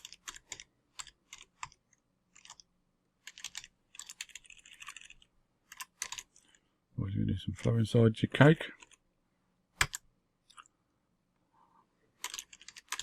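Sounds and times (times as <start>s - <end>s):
typing on a computer keyboard: 0.0s - 6.6s, 8.8s - 9.0s, 9.8s - 10.7s, 12.2s - 13.0s.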